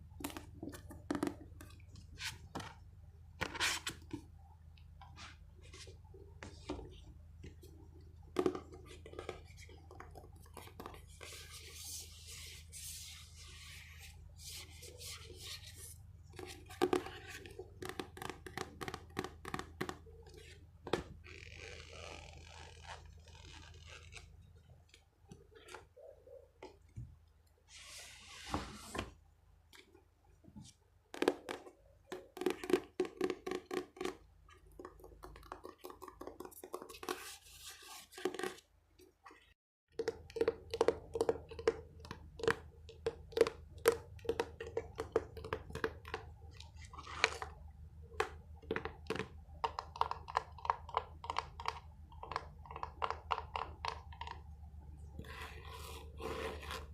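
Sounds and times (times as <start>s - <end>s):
scratchy rubs: 55.2s - 56.9s.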